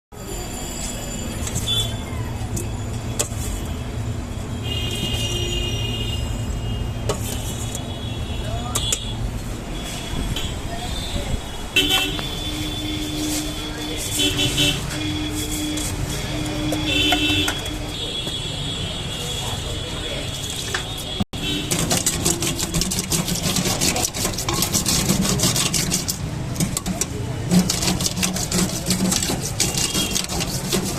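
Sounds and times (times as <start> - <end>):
high ringing tone: 0.1 - 2.0
steady background noise: 0.1 - 30.9
traffic engine hum: 1.4 - 30.9
rapid rhythmic scraping: 12.3 - 18.0, 20.4 - 30.9.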